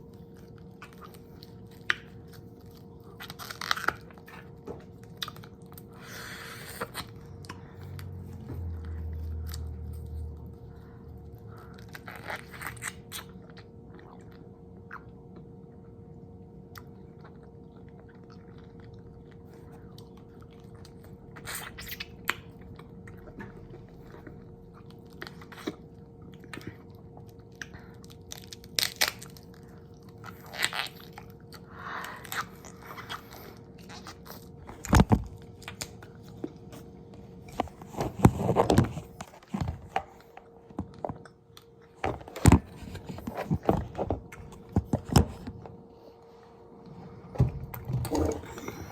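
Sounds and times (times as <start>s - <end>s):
chewing crunchy food: 0.0s - 46.2s.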